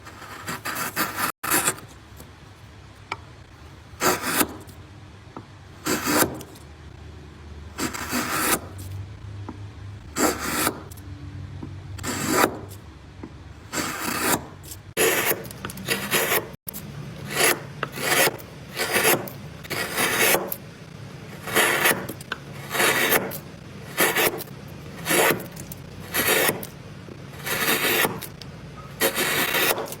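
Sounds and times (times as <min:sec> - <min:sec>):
hand tool scraping wood: 0:10.2 - 0:11.0, 0:13.7 - 0:16.6, 0:17.3 - 0:20.6, 0:21.4 - 0:24.4, 0:25.0 - 0:26.7, 0:27.4 - 0:28.3, 0:29.0 - 0:30.0.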